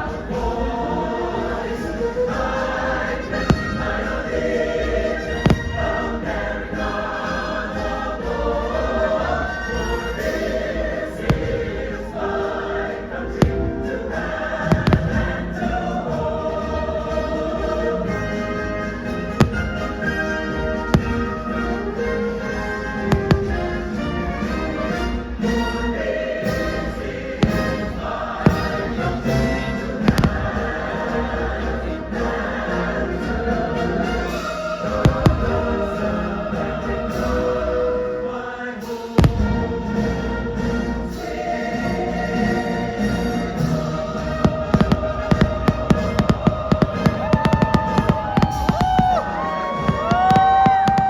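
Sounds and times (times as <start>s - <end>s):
choir singing: 0.0s - 51.0s
orchestral music: 0.0s - 51.0s
firework bangs: 5.4s - 6.1s.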